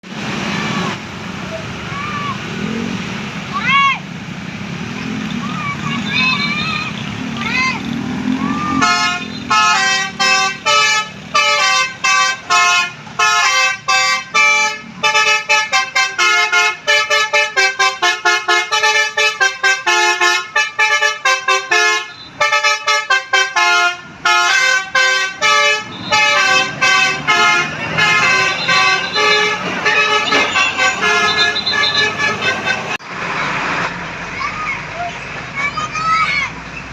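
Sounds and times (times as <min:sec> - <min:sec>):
musical air horn melody: 0:08.7 - 0:33.0.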